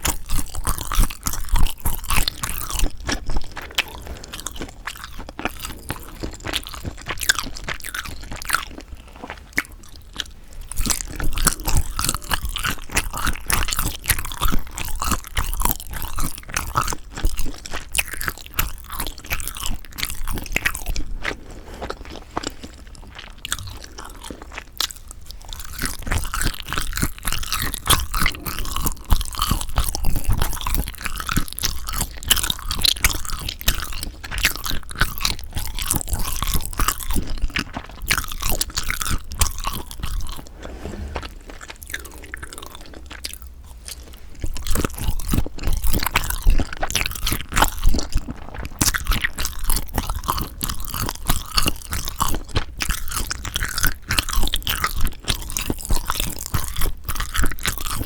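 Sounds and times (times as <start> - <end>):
wet sticky chewing: 0.0 - 40.6, 41.2 - 58.0.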